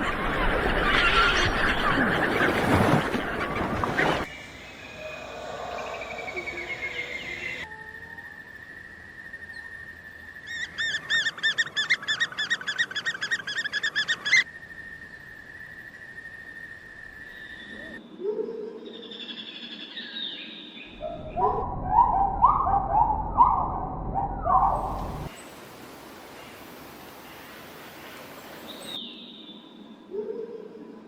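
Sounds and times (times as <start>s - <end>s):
bird chirping: 18.9s - 25.3s
lower bird calls: 20.8s - 25.3s.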